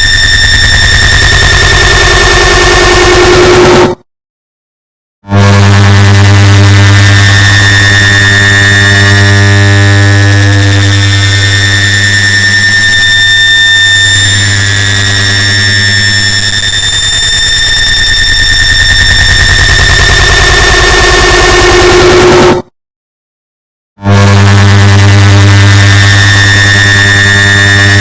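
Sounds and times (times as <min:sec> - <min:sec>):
fast rattling buzz: 0:00.0 - 0:03.7, 0:14.2 - 0:22.3, 0:25.6 - 0:28.0.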